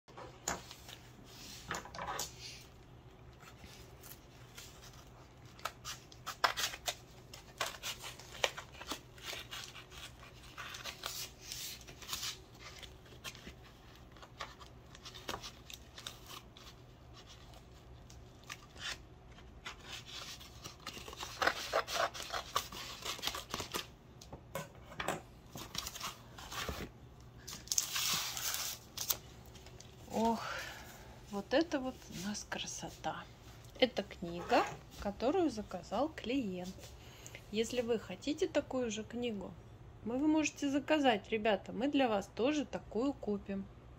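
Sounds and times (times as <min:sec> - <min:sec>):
packaging cutting and tearing: 0:05.4 - 0:17.6, 0:19.6 - 0:23.9.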